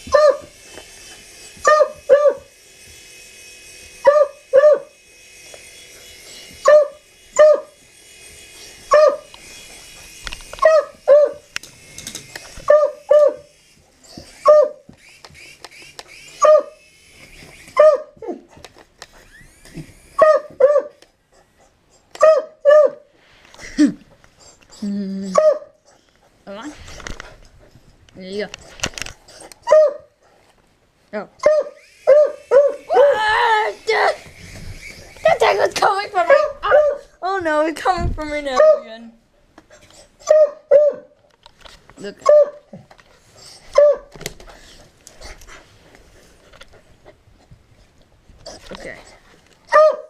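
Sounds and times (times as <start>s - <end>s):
dog barking: 0.1s - 0.5s, 1.6s - 2.5s, 4.0s - 4.9s, 6.6s - 7.8s, 8.9s - 9.3s, 10.6s - 11.4s, 12.7s - 13.5s, 14.4s - 14.8s, 16.4s - 16.8s, 17.8s - 18.2s, 20.2s - 21.0s, 22.2s - 23.0s, 25.4s - 25.7s, 29.7s - 30.1s, 31.4s - 33.2s, 36.3s - 37.1s, 40.2s - 41.1s, 42.2s - 42.6s, 43.7s - 44.1s, 49.7s - 50.0s.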